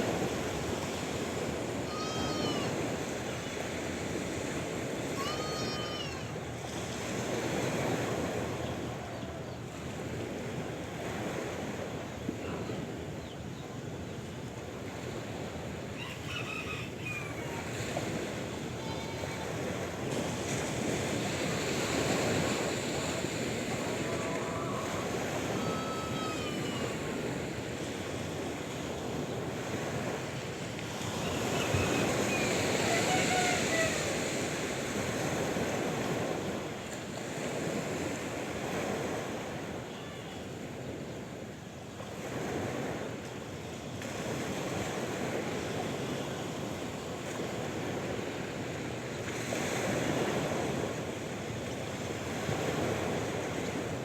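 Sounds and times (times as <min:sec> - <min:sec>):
sea waves washing in: 0:00.0 - 0:54.0
short high calls: 0:05.1 - 0:06.4, 0:23.8 - 0:27.3, 0:31.2 - 0:34.5.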